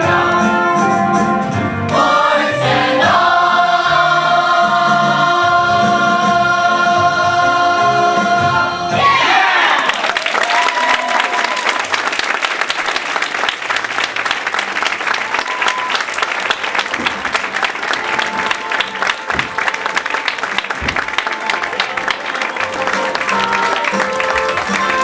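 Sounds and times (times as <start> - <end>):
audience applauding: 9.5 - 25.0.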